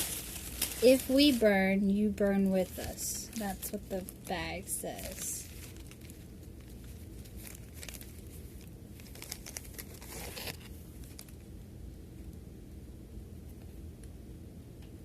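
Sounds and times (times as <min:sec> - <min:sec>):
paper crinkling and rustling: 0:00.0 - 0:11.5
low room hum: 0:00.0 - 0:15.0.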